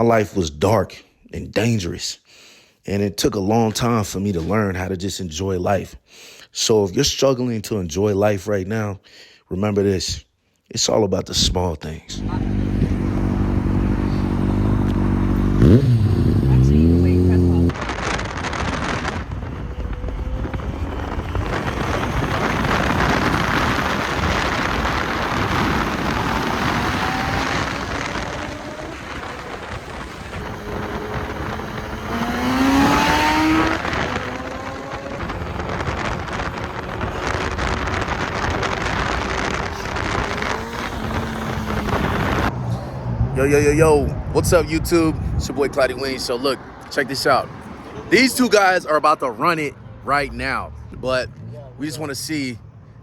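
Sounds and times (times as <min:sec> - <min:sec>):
motorcycle engine revving: 0:12.1 - 0:44.6
motorcycle engines running: 0:12.1 - 0:48.5.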